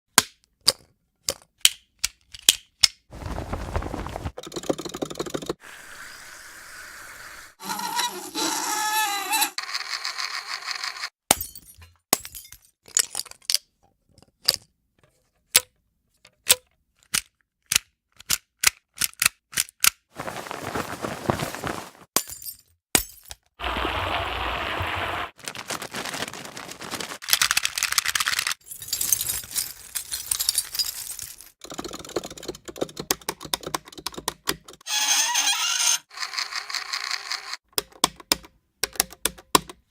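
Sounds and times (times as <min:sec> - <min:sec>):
rustling or scraping noise: 0:03.1 - 0:04.4, 0:20.2 - 0:22.1, 0:23.6 - 0:27.2.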